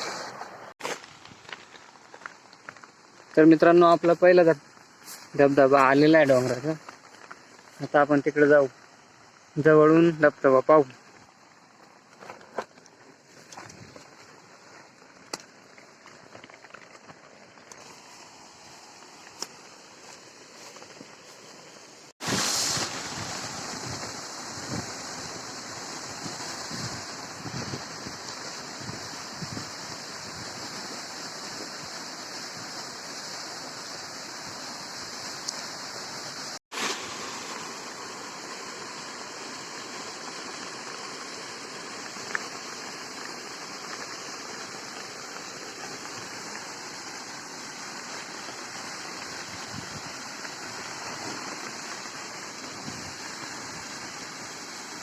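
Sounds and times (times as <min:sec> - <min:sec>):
waterfall rushing: 0:00.0 - 0:00.8, 0:21.6 - 0:55.0.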